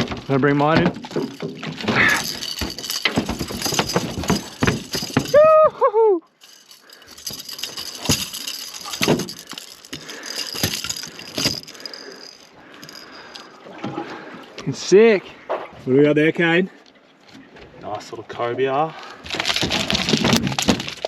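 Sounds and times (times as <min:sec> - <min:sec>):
fishing gear rattling and clinking: 0:00.0 - 0:14.2, 0:19.0 - 0:21.0
person shouting: 0:05.3 - 0:06.2.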